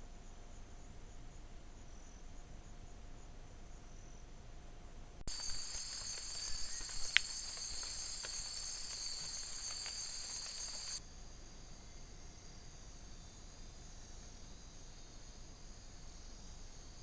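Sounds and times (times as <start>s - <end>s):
faint ticks: 5.3s - 11.0s
insects shrilling: 5.3s - 11.0s
faint insect hiss: 5.3s - 17.0s.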